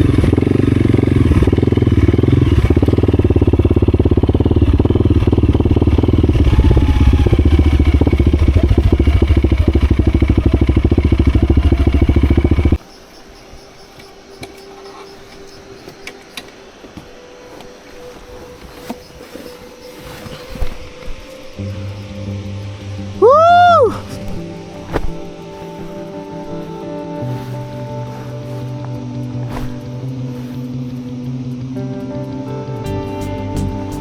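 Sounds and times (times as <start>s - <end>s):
motorcycle engine running: 0.0s - 12.9s, 17.8s - 34.0s.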